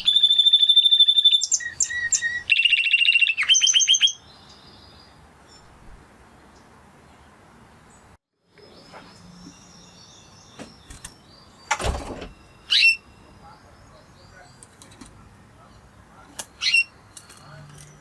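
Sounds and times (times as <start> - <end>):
canary chirping: 0.0 - 5.7, 12.3 - 14.8, 16.4 - 17.4.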